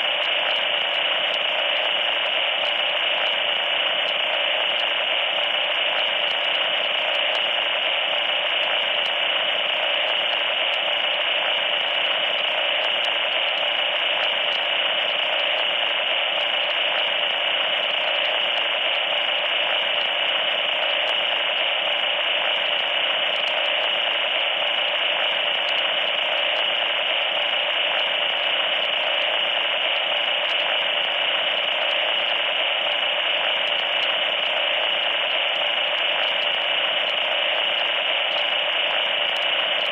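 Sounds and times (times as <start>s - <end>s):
harsh static hiss: 0.0s - 39.9s.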